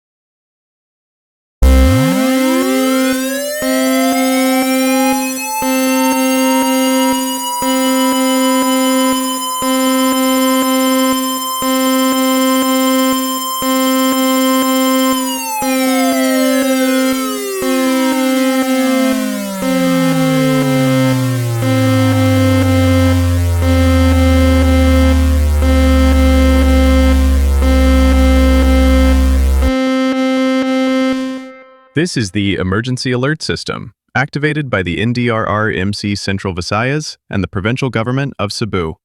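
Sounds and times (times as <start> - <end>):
steady lower tone: 1.6 - 32.0
synthesized siren-like alert tone: 1.6 - 32.0.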